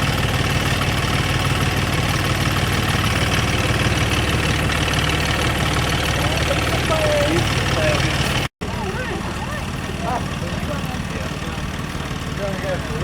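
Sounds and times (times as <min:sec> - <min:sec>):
engine running steadily: 0:00.0 - 0:13.0.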